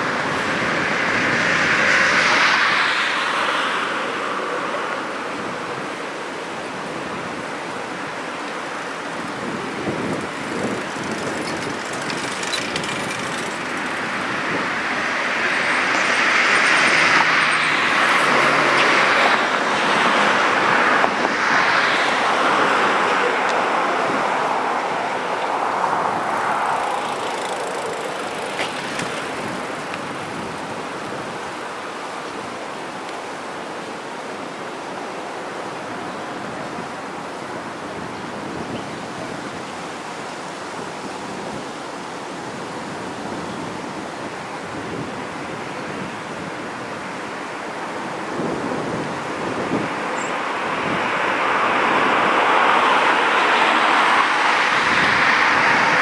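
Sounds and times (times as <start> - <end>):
vehicle passing by: 9.2 - 30.6.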